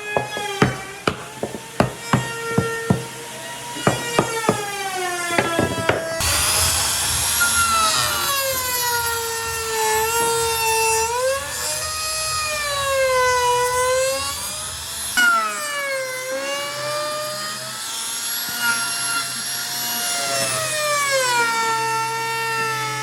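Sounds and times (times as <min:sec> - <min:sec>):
power tool whining on wood: 0:00.0 - 0:23.0
knocks on wood: 0:00.2 - 0:03.2, 0:03.8 - 0:06.2.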